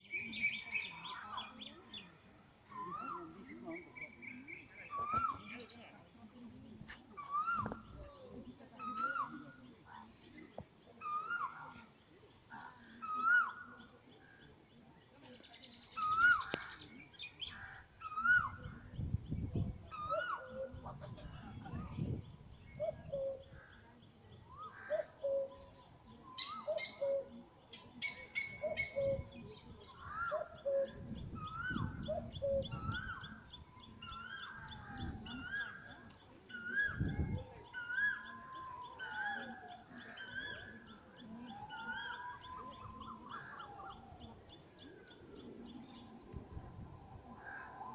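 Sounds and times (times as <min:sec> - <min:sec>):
birds chirping: 0:00.0 - 0:46.6
long arching bird calls: 0:07.1 - 0:19.0, 0:19.8 - 0:21.6, 0:22.2 - 0:46.3.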